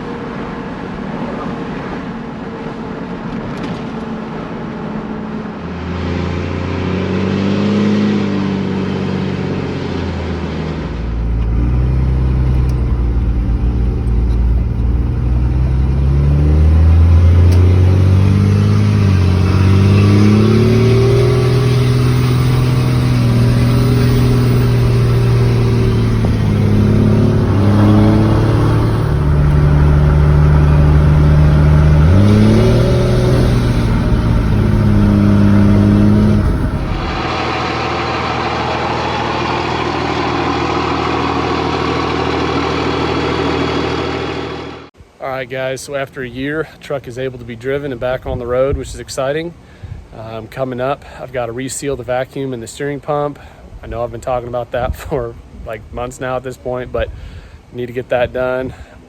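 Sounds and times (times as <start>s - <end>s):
diesel truck engine accelerating: 0.0s - 45.1s.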